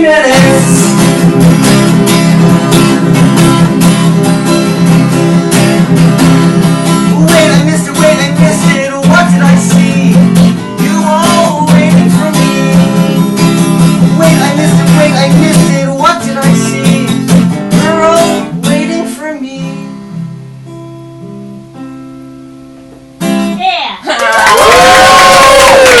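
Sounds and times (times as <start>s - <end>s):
person singing: 0.0s - 1.1s, 7.1s - 13.3s, 14.2s - 17.2s, 17.8s - 19.9s
acoustic guitar strumming: 0.0s - 23.8s.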